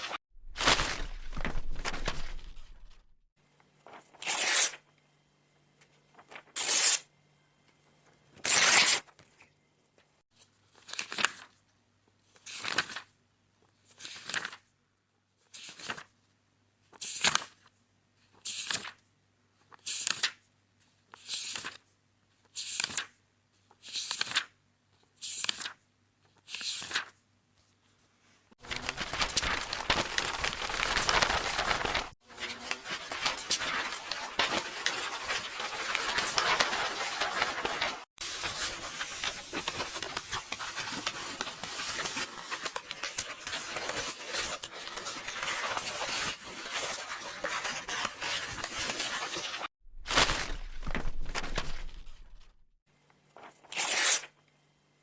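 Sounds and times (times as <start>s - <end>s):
pages turning: 0.0s - 4.8s, 5.9s - 7.0s, 10.4s - 11.6s, 12.3s - 13.1s, 13.8s - 14.7s, 15.4s - 16.1s, 16.9s - 17.6s, 18.3s - 19.0s, 19.6s - 21.8s, 22.4s - 24.5s, 25.2s - 28.0s, 28.6s - 52.7s
paper rustling: 0.0s - 4.8s, 5.9s - 7.0s, 25.3s - 52.7s
sharp paper strokes: 4.1s - 4.8s, 6.2s - 7.0s, 8.4s - 9.0s, 28.6s - 49.7s, 53.6s - 54.3s.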